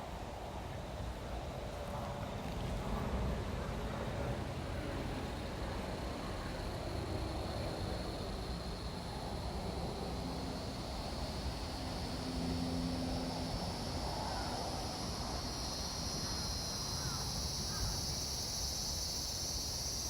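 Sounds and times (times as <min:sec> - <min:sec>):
high-pitched insect chorus: 0:04.3 - 0:20.0.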